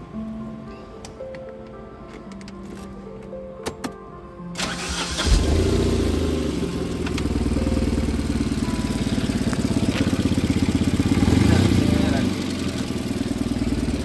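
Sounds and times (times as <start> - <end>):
car engine starting and idling: 4.6 - 14.0.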